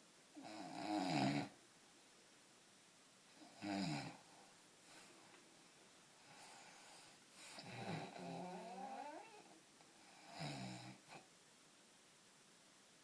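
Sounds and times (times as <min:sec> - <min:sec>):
man snoring: 0:00.4 - 0:01.5, 0:03.5 - 0:04.2, 0:07.6 - 0:09.4
snort: 0:06.3 - 0:09.5.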